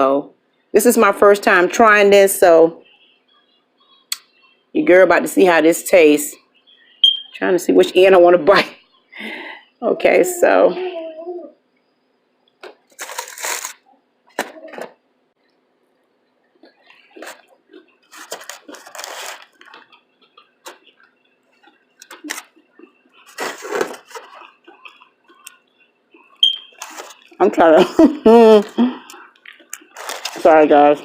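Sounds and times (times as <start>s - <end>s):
crunchy wet chewing: 16.6s - 27.4s.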